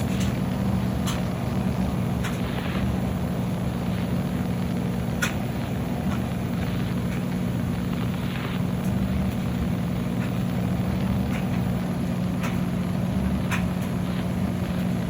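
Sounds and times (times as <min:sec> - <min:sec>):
washing machine motor hum: 0:00.0 - 0:15.0.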